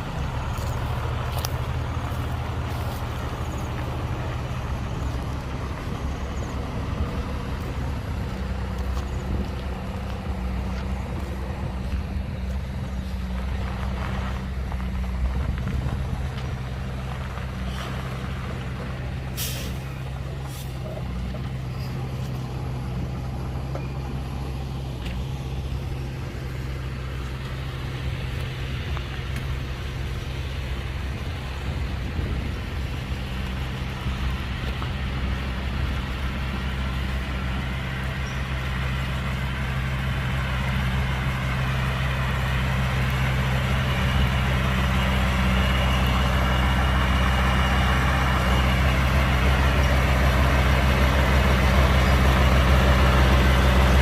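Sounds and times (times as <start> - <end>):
heavy diesel truck engine: 0.0 - 54.0
air brake hisses: 19.3 - 19.9.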